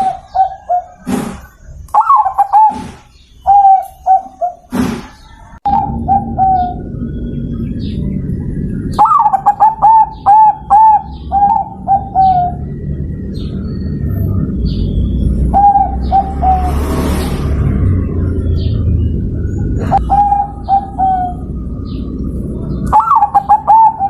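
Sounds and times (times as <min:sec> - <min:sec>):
dove cooing: 0:00.0 - 0:14.0, 0:14.7 - 0:16.8, 0:19.6 - 0:24.0
low background rumble: 0:05.4 - 0:24.0.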